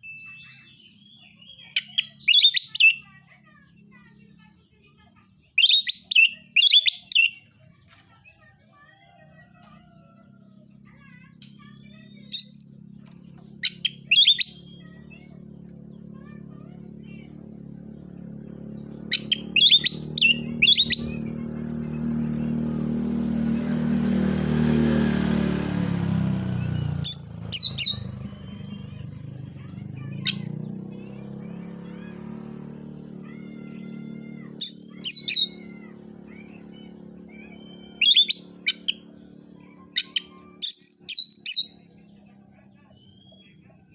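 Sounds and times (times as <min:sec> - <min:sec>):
songbird calling in sharp clusters: 0:00.0 - 0:03.0, 0:05.6 - 0:07.4, 0:11.4 - 0:12.9, 0:13.6 - 0:14.8, 0:18.8 - 0:21.2, 0:26.6 - 0:28.9, 0:34.6 - 0:35.6, 0:37.5 - 0:39.1, 0:39.9 - 0:41.9
low engine hum: 0:00.0 - 0:43.9.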